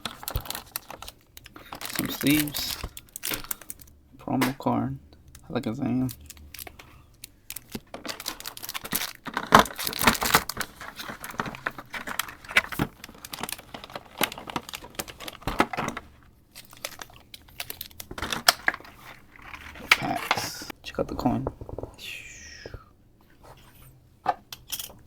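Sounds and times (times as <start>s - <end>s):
cardboard rustling and clicking: 0.0s - 3.8s, 7.5s - 22.0s
plastic wrapping crinkling: 0.0s - 3.9s, 6.0s - 21.9s.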